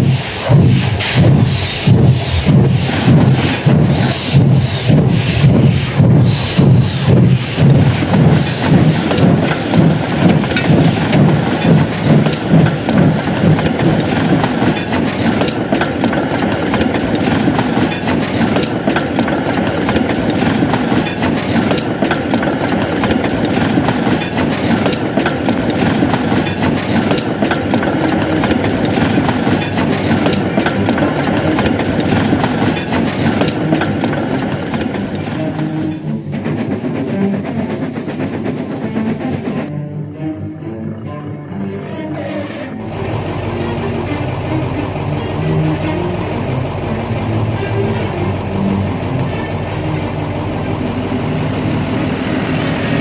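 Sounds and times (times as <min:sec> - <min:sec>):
rail clicks: 0:00.0 - 0:39.7, 0:42.8 - 0:53.0
steam locomotive chuffing: 0:00.0 - 0:39.7, 0:42.8 - 0:53.0.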